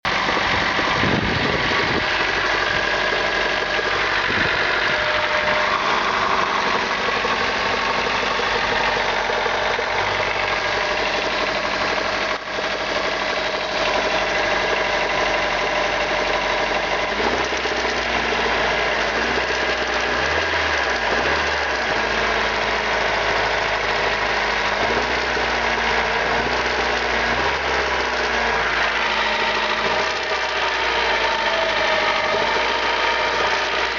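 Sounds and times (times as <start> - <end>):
car engine running: 0.0 - 33.9
engine knocking: 0.0 - 33.9.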